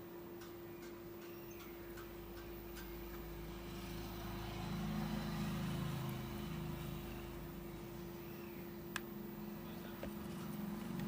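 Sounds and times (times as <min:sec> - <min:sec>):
steady low hum: 0:00.0 - 0:11.0
vehicle engine passing: 0:03.0 - 0:08.3.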